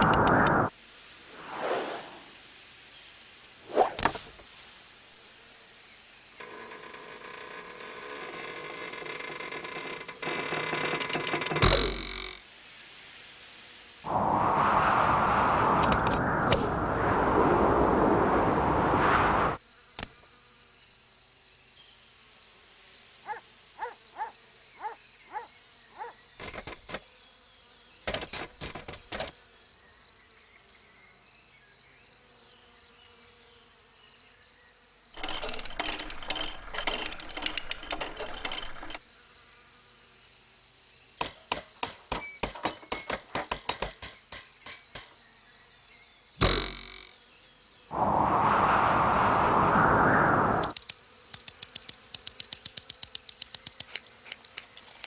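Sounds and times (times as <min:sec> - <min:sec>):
scattered clicks: 0:00.0 - 0:00.7, 0:35.2 - 0:39.0, 0:50.6 - 0:54.7
cricket trilling: 0:00.0 - 0:12.4, 0:22.8 - 0:55.0
loud rushing noise: 0:14.1 - 0:19.6, 0:47.9 - 0:50.7.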